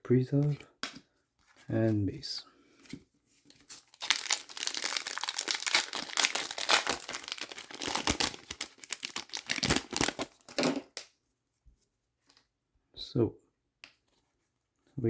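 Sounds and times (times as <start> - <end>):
wrapper crinkling and tearing: 3.5 - 10.8.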